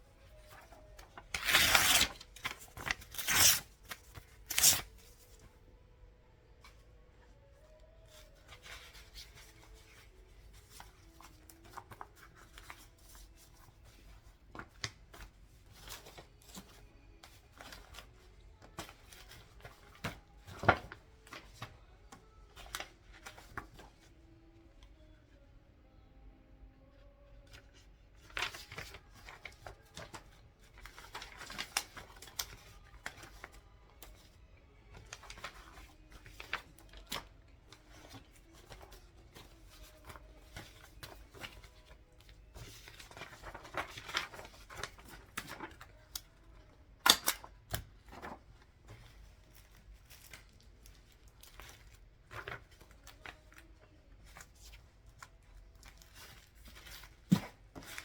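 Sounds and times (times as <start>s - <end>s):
paper rustling and tearing: 0.3s - 5.5s, 35.0s - 46.2s, 47.0s - 58.0s.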